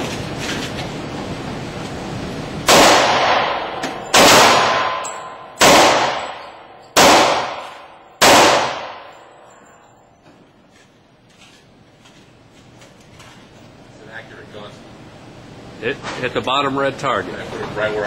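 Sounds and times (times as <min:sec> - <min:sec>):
pistol shots with echo: 0:02.7 - 0:09.3.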